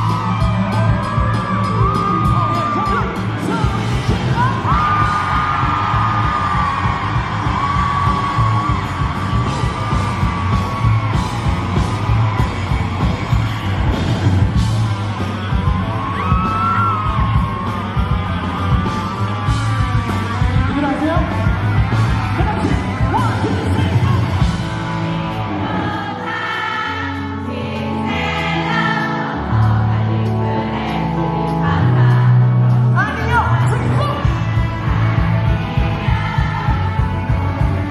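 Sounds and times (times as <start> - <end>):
bass: 0.0 - 37.9
drums: 0.0 - 37.9
guitar: 0.0 - 37.9.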